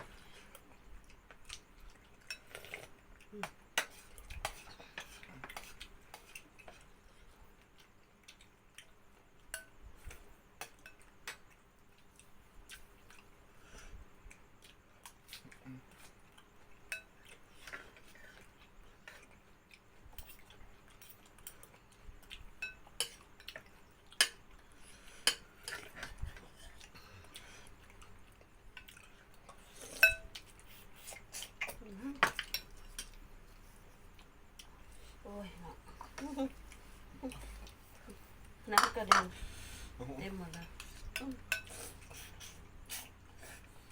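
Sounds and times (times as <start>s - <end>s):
cutlery clinking on plates: 9.5s - 11.4s, 22.6s - 23.6s, 30.0s - 30.4s, 38.8s - 39.3s, 40.9s - 41.8s.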